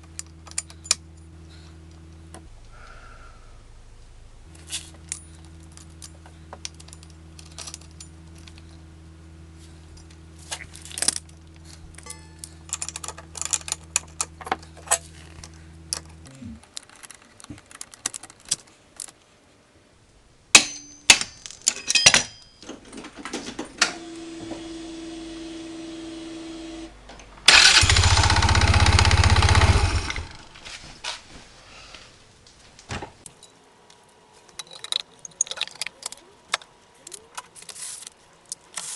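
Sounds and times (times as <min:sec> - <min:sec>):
electric starter cranking engine: 0:27.5 - 0:30.6
scooter engine idling: 0:27.5 - 0:30.6.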